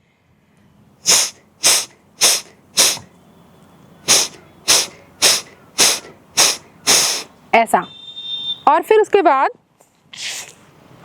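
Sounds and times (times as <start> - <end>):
sharp hissing snorts through nose: 1.0 - 3.1, 4.0 - 7.4, 10.1 - 10.6.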